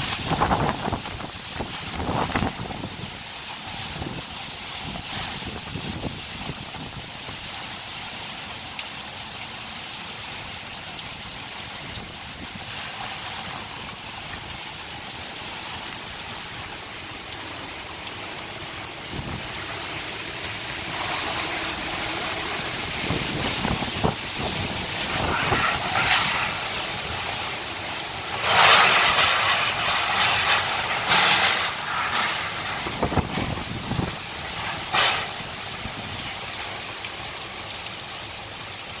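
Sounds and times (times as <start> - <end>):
wind buffeting microphone: 0.0 - 7.2, 19.1 - 20.1, 20.7 - 36.4
hurricane wind gusts: 0.0 - 7.9, 10.6 - 37.6.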